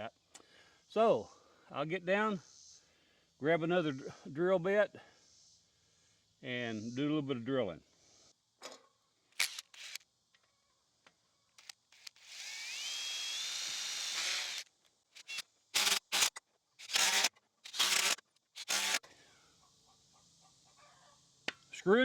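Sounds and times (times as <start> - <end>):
drill clicks: 9.4 - 10.0, 11.6 - 19.1
power drill drilling into wood: 9.4 - 10.0, 11.9 - 19.0.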